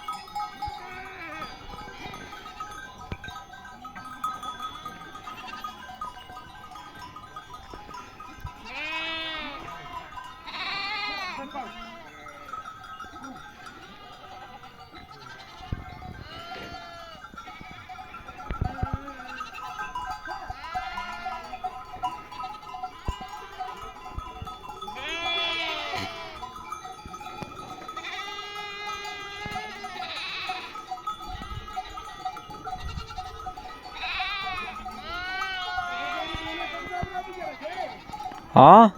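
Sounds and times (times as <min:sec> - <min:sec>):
livestock bells ringing: 0:00.0 - 0:38.9
sheep bleating: 0:00.8 - 0:02.3, 0:08.6 - 0:12.5, 0:15.1 - 0:18.1, 0:20.5 - 0:21.6, 0:25.0 - 0:26.5, 0:27.9 - 0:30.8, 0:34.0 - 0:38.9.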